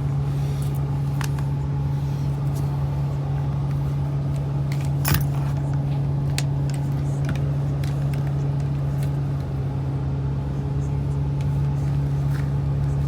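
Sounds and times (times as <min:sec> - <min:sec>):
bus engine drone: 0:00.0 - 0:13.0
cabin rattles and clicks: 0:03.4 - 0:09.6.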